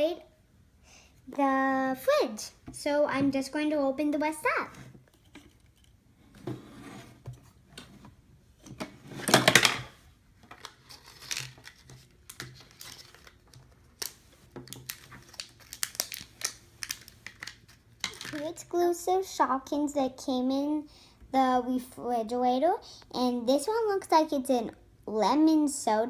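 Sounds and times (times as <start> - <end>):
packaging crinkling and tearing: 10.6 - 18.4.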